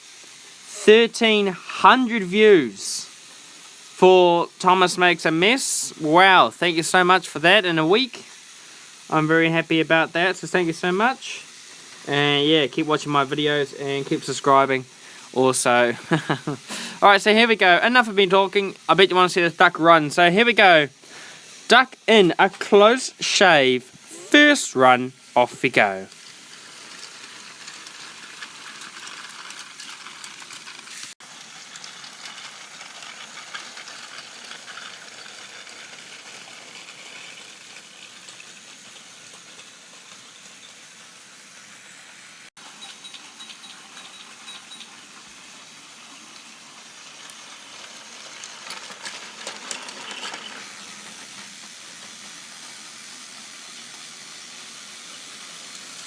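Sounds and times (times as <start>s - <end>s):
toy train motor whirring: 0.0s - 1.8s, 2.8s - 56.0s
toy train wheels rattling: 25.4s - 41.8s, 42.6s - 56.0s.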